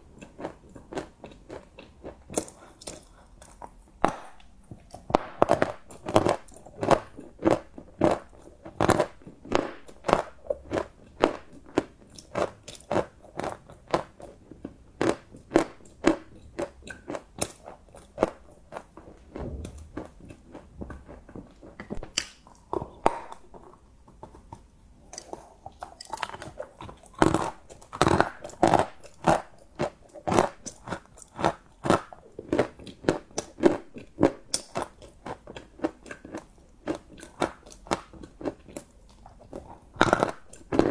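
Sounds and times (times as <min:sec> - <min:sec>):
crunchy chocolate chewing: 0:00.0 - 0:24.6, 0:25.2 - 0:40.9.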